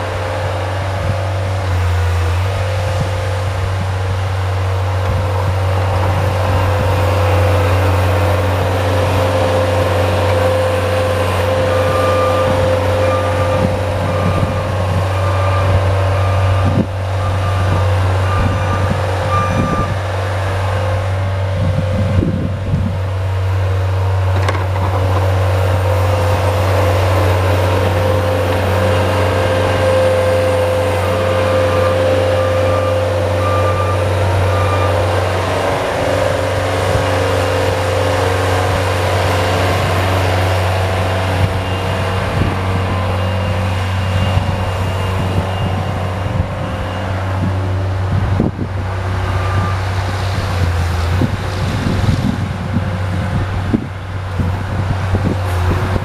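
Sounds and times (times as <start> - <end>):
diesel engine running under load: 0.0 - 56.0
backup alarm beeping: 9.5 - 20.0, 25.8 - 47.6.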